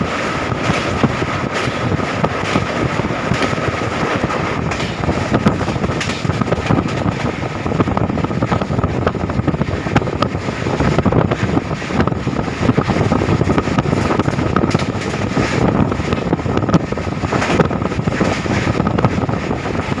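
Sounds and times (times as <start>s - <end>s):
train wheels rumbling on track: 0.0s - 20.0s
wind on microphone: 0.0s - 20.0s
rattling clicks: 0.6s - 7.3s, 14.0s - 16.2s.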